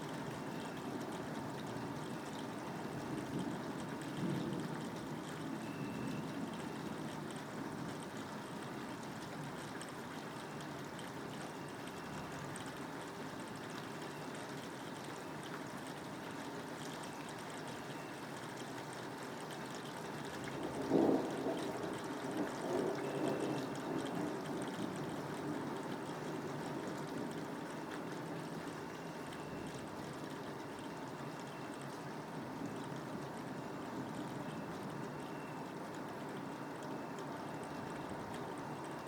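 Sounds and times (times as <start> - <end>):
steady rain falling: 0.0 - 39.0
thunderclap and rumble: 3.0 - 5.2, 20.4 - 27.4.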